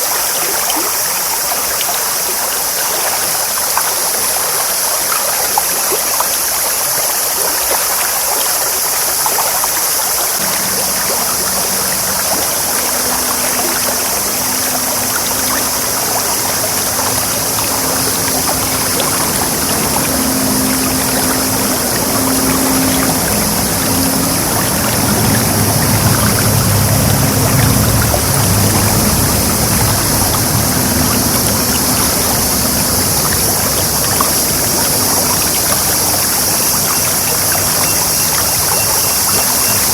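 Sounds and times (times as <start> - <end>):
stream babbling over rocks: 0.0 - 39.9
low engine drone: 10.4 - 39.9.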